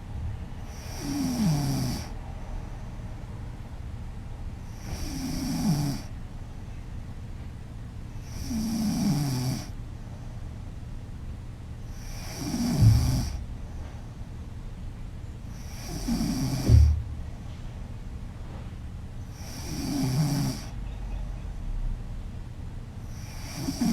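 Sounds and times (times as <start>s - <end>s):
woman snoring: 0.7s - 2.2s, 4.8s - 6.1s, 8.3s - 9.7s, 12.0s - 13.4s, 15.6s - 17.0s, 19.3s - 20.8s, 23.1s - 23.9s.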